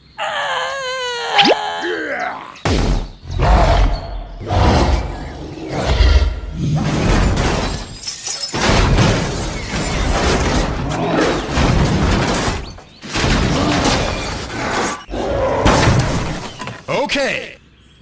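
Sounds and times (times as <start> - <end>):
loud crashing and shattering: 6.6 - 15.0.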